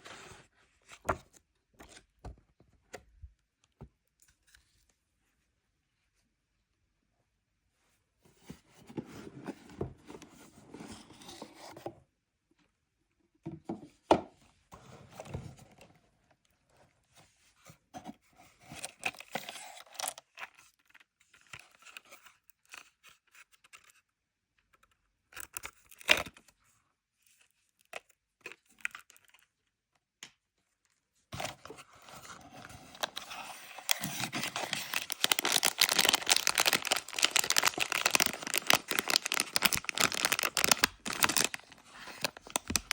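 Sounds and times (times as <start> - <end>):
packaging tearing and crinkling: 32.9 - 42.9.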